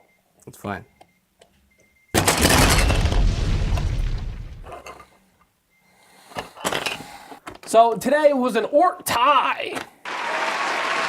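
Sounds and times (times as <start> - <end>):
loud explosion boom: 2.2 - 4.7.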